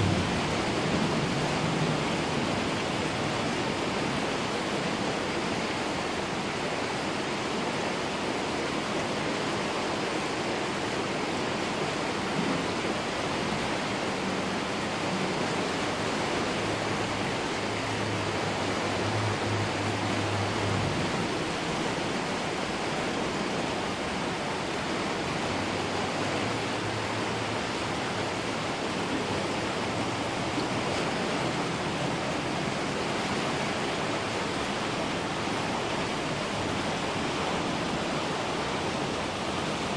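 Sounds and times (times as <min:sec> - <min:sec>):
creek rushing: 0:00.0 - 0:39.9.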